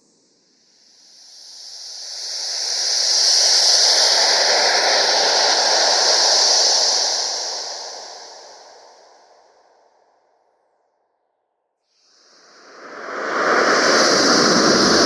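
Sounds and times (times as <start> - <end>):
gust of wind rushing: 12.4 - 15.0.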